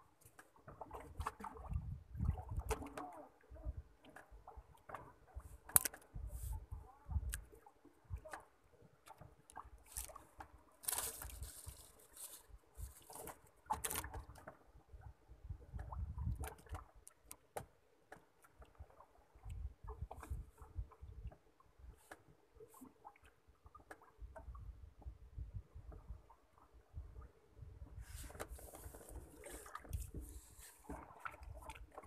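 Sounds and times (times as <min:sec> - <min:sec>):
water sloshing against hull: 0:00.0 - 0:32.0
knocks and clicks on boat: 0:15.7 - 0:18.7.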